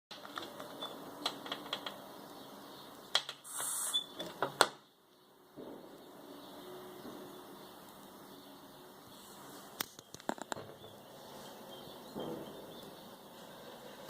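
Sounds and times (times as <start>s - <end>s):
short hiss of air: 3.4s - 4.1s.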